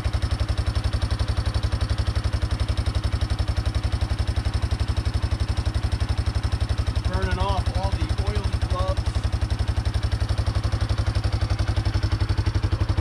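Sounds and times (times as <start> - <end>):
atv engine idling: 0.0 - 13.0.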